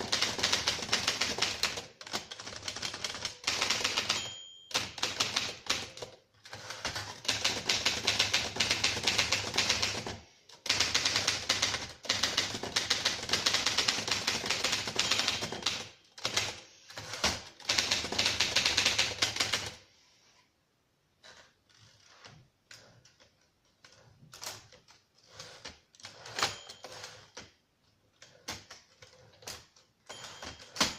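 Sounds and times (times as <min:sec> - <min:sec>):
typewriter key strikes: 0:10.7 - 0:16.5.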